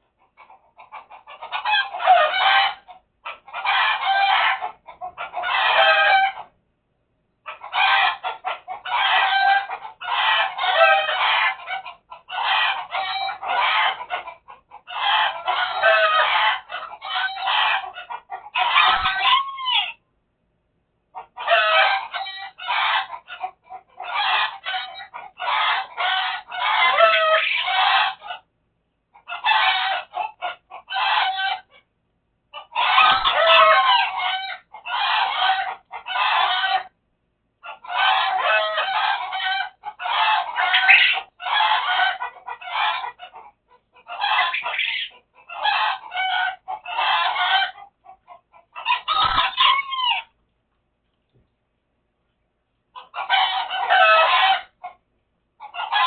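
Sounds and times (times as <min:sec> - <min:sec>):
chickens clucking: 0:00.0 - 0:06.6, 0:07.4 - 0:20.0, 0:21.0 - 0:28.5, 0:29.1 - 0:31.9, 0:32.5 - 0:37.0, 0:37.6 - 0:50.4, 0:52.7 - 0:56.0
rooster crowing: 0:05.4 - 0:06.4, 0:32.9 - 0:36.9, 0:53.2 - 0:54.7.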